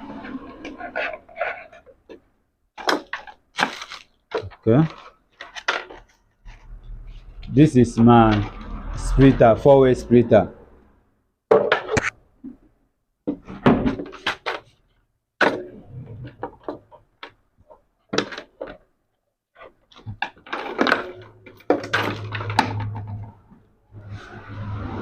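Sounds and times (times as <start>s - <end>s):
clatter of handling electronic units: 2.8s - 6.6s, 16.2s - 18.9s, 19.6s - 23.7s.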